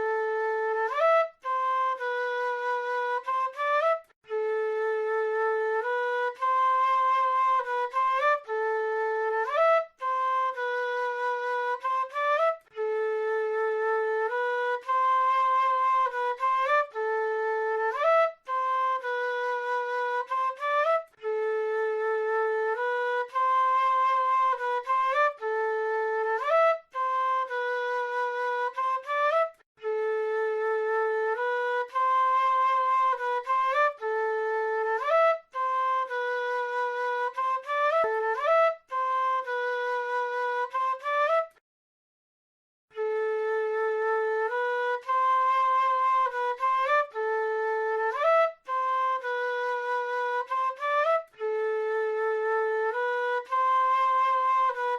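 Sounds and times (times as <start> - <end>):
flute playing slow melody: 0.0 - 41.6, 42.9 - 54.9.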